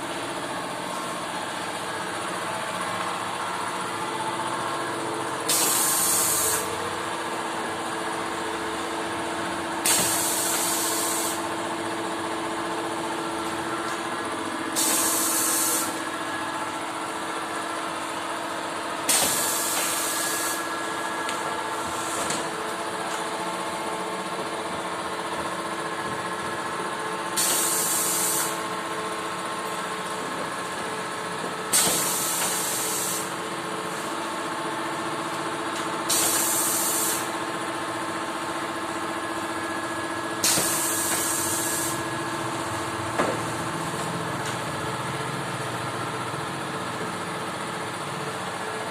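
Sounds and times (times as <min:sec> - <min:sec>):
steady motor hum: 0:00.0 - 0:48.9
hiss of air: 0:05.5 - 0:06.7, 0:09.9 - 0:11.4, 0:14.8 - 0:16.0, 0:27.4 - 0:28.6, 0:31.7 - 0:33.3, 0:36.1 - 0:37.3.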